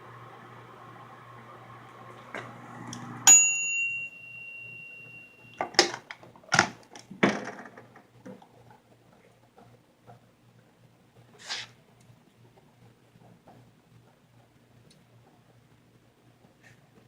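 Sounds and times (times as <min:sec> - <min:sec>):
microwave oven hum: 0:00.0 - 0:05.8
bell ding: 0:03.2 - 0:05.8.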